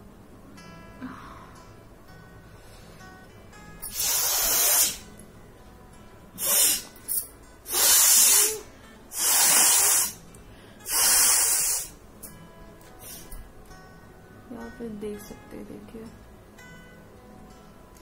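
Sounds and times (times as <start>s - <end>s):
person blowing nose: 3.8s - 5.1s, 6.4s - 6.9s, 7.7s - 10.2s, 10.8s - 12.0s, 13.0s - 13.3s.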